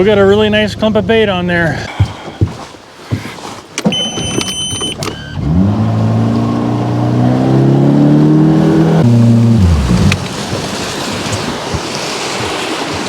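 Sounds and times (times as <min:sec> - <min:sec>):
outboard motor revving: 0:03.8 - 0:12.6.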